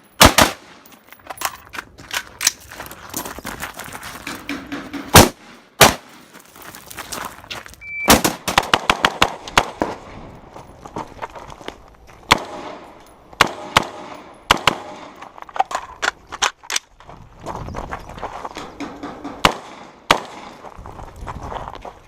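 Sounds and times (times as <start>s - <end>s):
rifle shots with echo: 0.2s - 0.9s, 4.5s - 6.2s, 8.0s - 10.2s, 12.3s - 15.2s, 18.8s - 20.6s.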